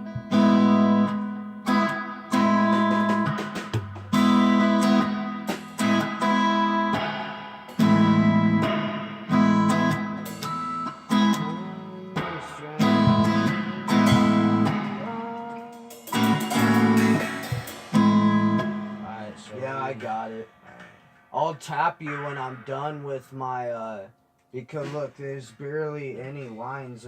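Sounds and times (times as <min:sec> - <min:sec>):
guitar strumming chords: 0:00.0 - 0:24.6.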